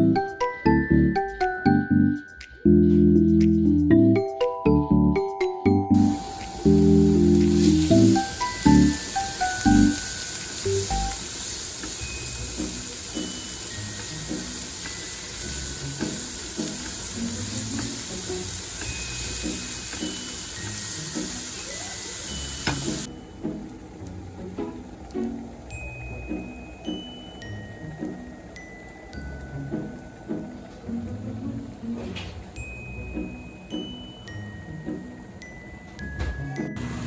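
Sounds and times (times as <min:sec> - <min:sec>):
soft background music: 0:00.0 - 0:37.0
food sizzling in a frying pan: 0:06.0 - 0:35.1
slow high bell-like notes: 0:22.3 - 0:23.7, 0:25.7 - 0:31.0, 0:32.6 - 0:36.8.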